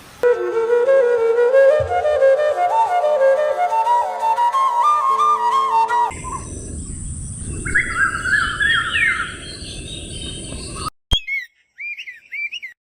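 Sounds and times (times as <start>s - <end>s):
flute music: 0.2s - 6.5s
birds calling: 4.4s - 12.8s.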